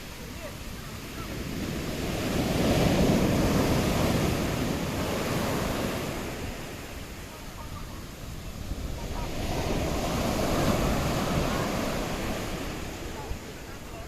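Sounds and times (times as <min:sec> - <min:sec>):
sea waves breaking on shore: 0:00.0 - 0:14.0
wind buffeting microphone: 0:00.0 - 0:14.0.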